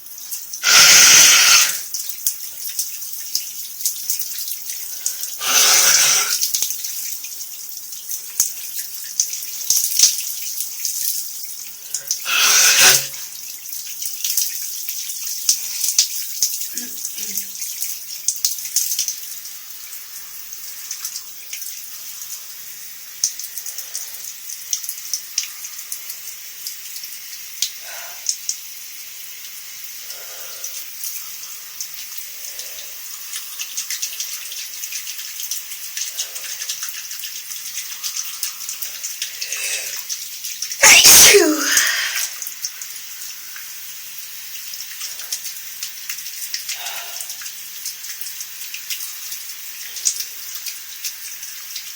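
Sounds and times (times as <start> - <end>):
person sneezing: 0.6 - 1.8, 5.4 - 6.4, 12.3 - 13.2, 39.5 - 40.0, 40.8 - 42.4
shower water hissing: 0.6 - 2.0, 4.8 - 7.2, 11.8 - 13.4, 19.4 - 34.9, 35.7 - 51.9.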